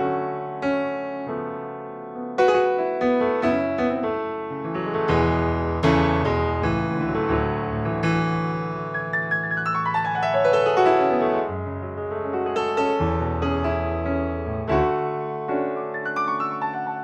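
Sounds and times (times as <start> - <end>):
piano chords: 0.0 - 17.0
falling piano run: 3.3 - 17.0.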